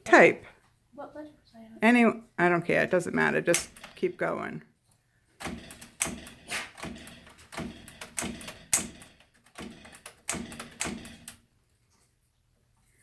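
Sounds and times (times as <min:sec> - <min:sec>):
manual typewriter typing: 0:03.5 - 0:04.1, 0:05.4 - 0:11.4.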